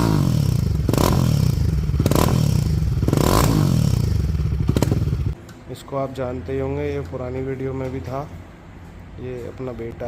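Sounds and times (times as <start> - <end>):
motorcycle engine revving: 0.0 - 5.4.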